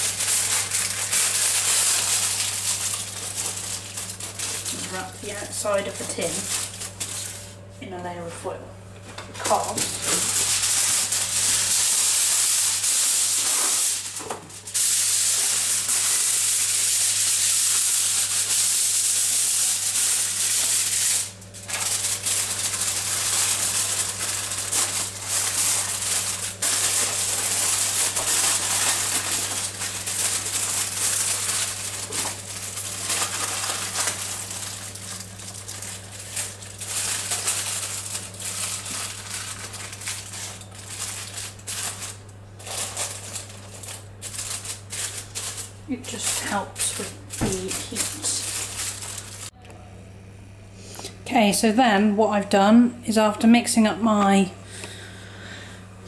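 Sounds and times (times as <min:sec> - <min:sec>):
aluminium foil crinkling: 0:00.0 - 0:08.4, 0:09.0 - 0:49.6
steady low hum: 0:00.0 - 0:56.0.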